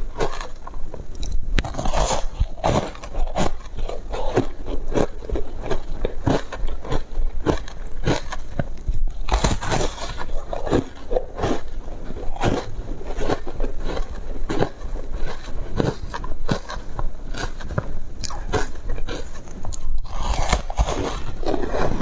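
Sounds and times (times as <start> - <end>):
crunchy food chewing: 0.0 - 22.0.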